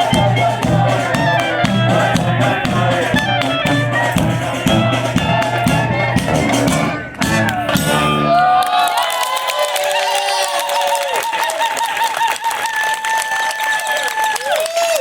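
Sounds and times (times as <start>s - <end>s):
steady drum beat: 0.0s - 8.5s
klezmer band playing: 0.0s - 8.6s.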